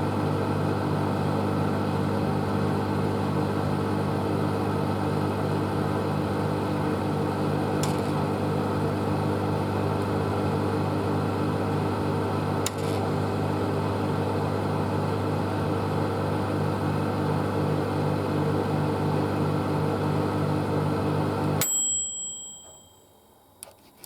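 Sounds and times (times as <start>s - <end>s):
microwave oven humming: 0.0s - 23.6s
sharp click: 12.6s - 13.0s.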